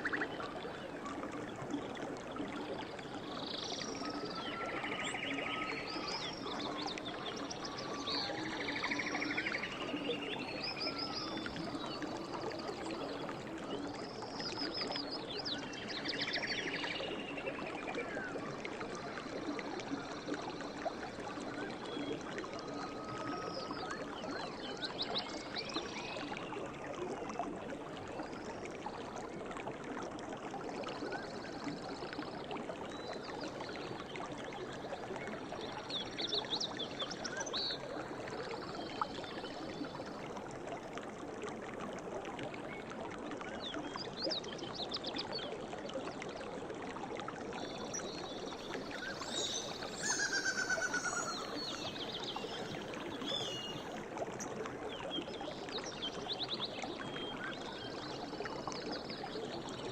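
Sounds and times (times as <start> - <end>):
stream over rocks: 0.0 - 59.9
songbirds chirping and trilling: 48.5 - 53.9.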